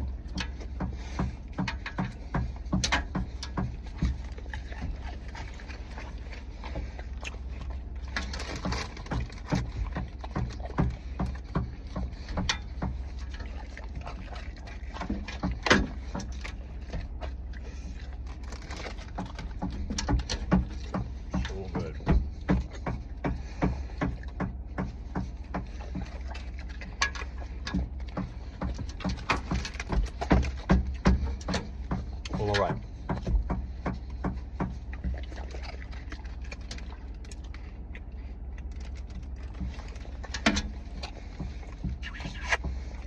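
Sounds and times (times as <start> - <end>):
person chewing: 0.0 - 32.3, 32.9 - 43.0
low steady hum: 0.0 - 43.0.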